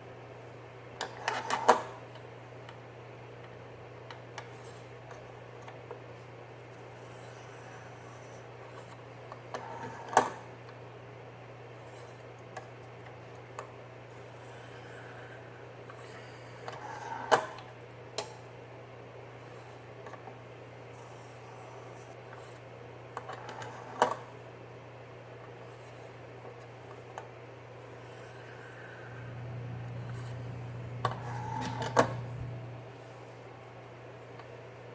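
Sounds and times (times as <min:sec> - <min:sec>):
low hum: 0:29.1 - 0:33.0.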